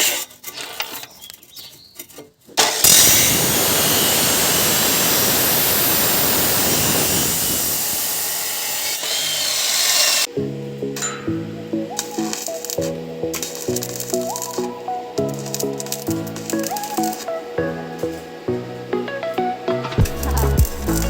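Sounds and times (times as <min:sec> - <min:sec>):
metal clicks and scrapes: 0:00.0 - 0:03.1
tool hissing on steel: 0:02.8 - 0:10.3, 0:12.0 - 0:17.4.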